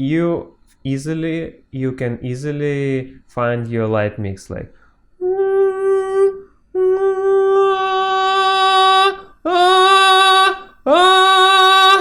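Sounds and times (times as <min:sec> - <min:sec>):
man singing high notes: 0:05.2 - 0:12.0.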